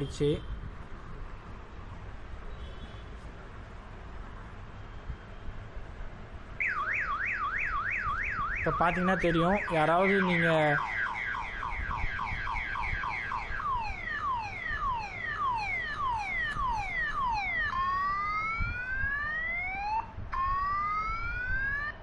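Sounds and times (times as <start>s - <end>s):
phone alarm siren: 6.6s - 22.0s.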